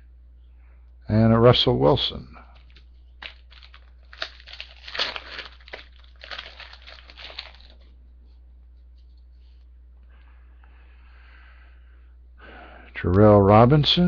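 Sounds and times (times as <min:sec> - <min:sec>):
wrapper tearing and crinkling: 0:02.6 - 0:07.9.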